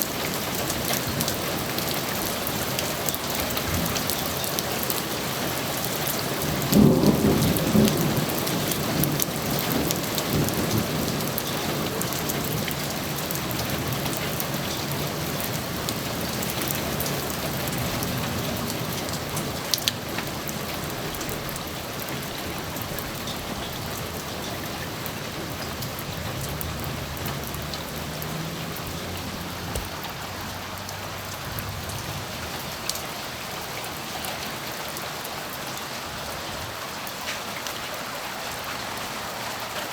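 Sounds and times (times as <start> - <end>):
steady rain falling: 0.0 - 39.9
thunder rumbling: 6.4 - 12.7, 22.4 - 32.8
sharp drip ticks: 25.8 - 32.0.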